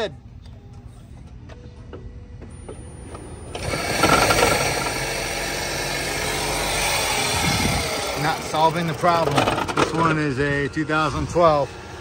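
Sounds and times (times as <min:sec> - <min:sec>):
car engine starting and running: 0:02.9 - 0:10.6.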